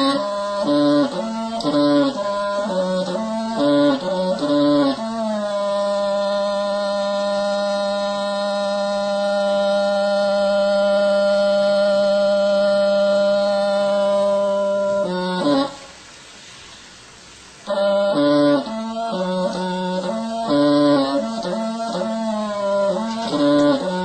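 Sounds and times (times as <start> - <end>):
long held musical note: 17.7 - 24.0.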